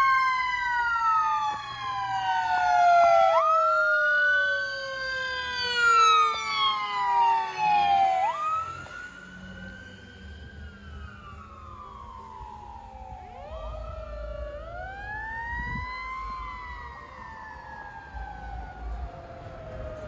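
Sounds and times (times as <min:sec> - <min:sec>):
engine and road rumble: 0:00.0 - 0:20.0
fire engine siren wailing: 0:00.0 - 0:20.0.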